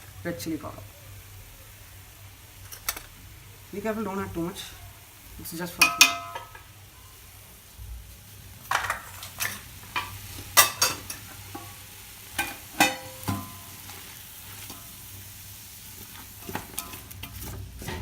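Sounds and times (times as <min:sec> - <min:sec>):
metal spoon stirring in pot: 0:05.7 - 0:06.8, 0:08.7 - 0:15.1, 0:15.8 - 0:18.0
spoon scraping and clinking pot: 0:05.8 - 0:06.7, 0:12.4 - 0:14.0.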